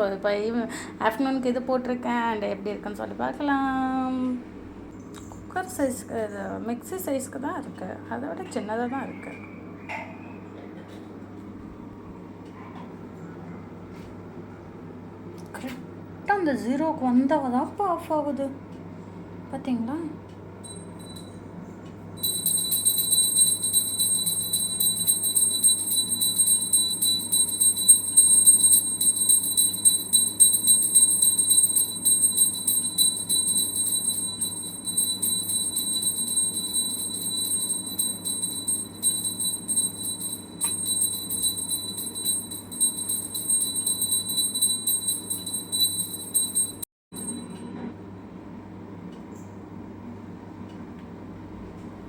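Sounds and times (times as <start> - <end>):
timer bell ringing: 20.6 - 21.4, 22.2 - 47.7.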